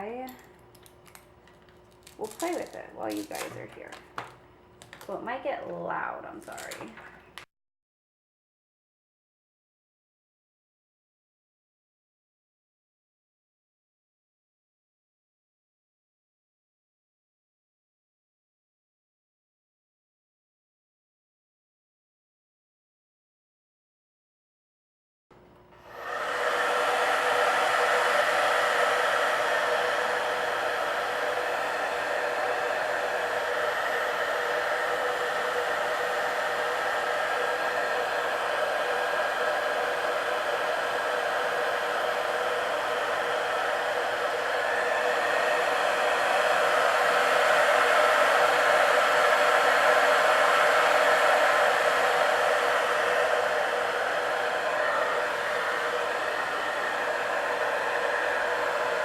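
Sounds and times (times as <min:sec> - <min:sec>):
hair dryer blowing: 0:01.9 - 0:07.2, 0:25.8 - 0:59.0.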